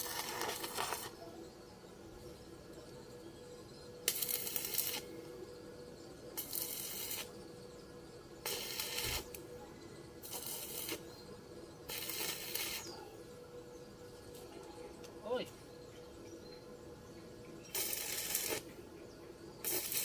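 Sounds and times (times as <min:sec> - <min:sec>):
arc welding crackling: 0:00.0 - 0:01.3, 0:03.9 - 0:05.6, 0:06.2 - 0:07.6, 0:08.4 - 0:09.5, 0:10.2 - 0:13.0, 0:17.5 - 0:20.0.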